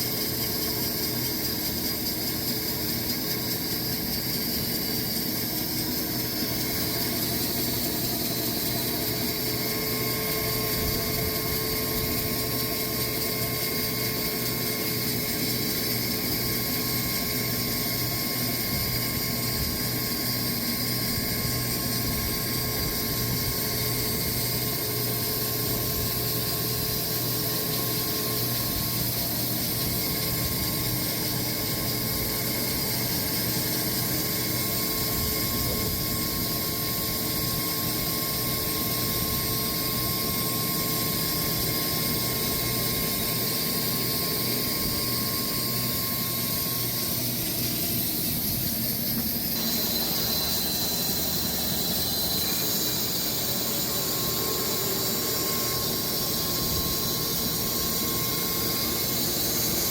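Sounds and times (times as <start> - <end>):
sawmill machine drone: 0.0 - 59.9.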